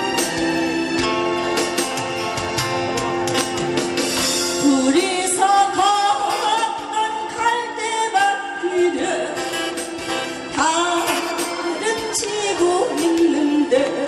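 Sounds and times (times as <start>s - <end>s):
person singing: 4.6s - 9.8s, 10.5s - 14.0s.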